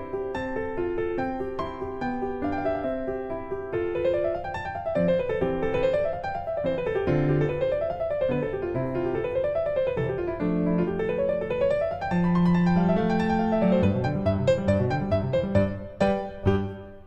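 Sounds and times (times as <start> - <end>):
instrumental music: 0.0 - 17.0.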